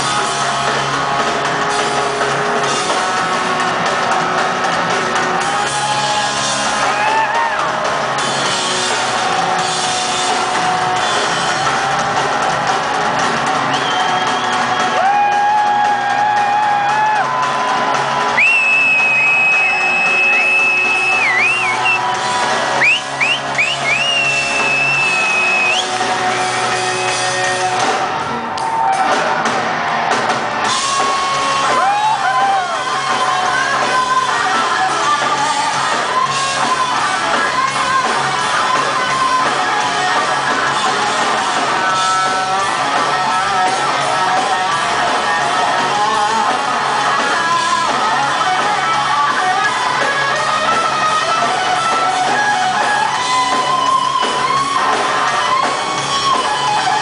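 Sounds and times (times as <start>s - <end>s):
live rock band playing: 0.0s - 57.0s
person singing: 31.6s - 57.0s.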